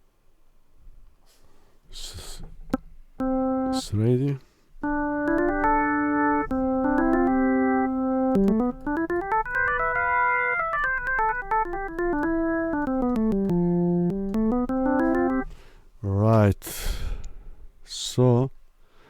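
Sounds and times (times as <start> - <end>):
organ chords and runs: 3.2 - 4.2, 4.8 - 15.5.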